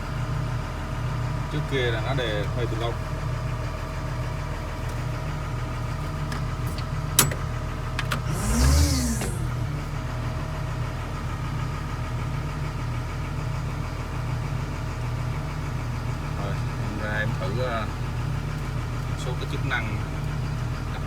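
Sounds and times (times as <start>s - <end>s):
diesel engine idling: 0.0s - 21.0s
engine pitch rise with hiss: 8.3s - 9.8s.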